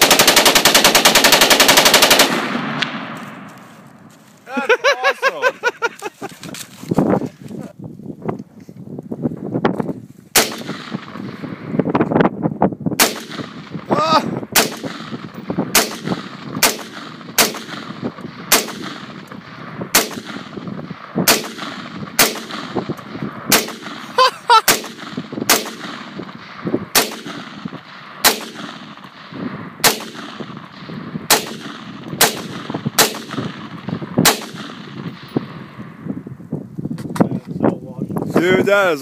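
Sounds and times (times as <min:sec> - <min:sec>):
rifle shots with echo: 0:00.0 - 0:04.1, 0:10.3 - 0:11.8, 0:13.0 - 0:36.1.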